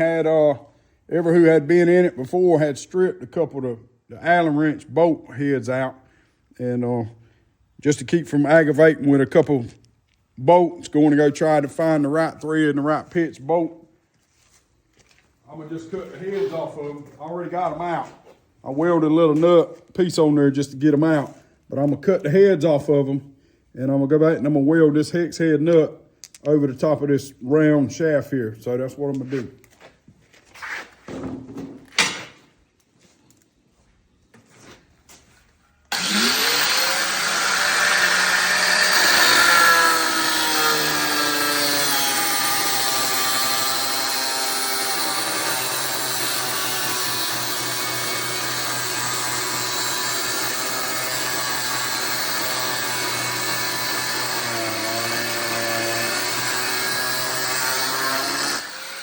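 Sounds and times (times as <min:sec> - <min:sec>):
power tool cutting steel bolts: 0:35.9 - 0:59.0.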